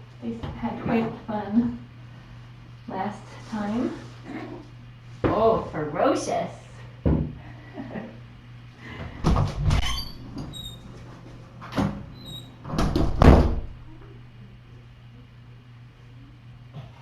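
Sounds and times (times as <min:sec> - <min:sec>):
door squeaking: 0:09.6 - 0:10.9, 0:11.8 - 0:13.7
door knocks: 0:12.7 - 0:13.7.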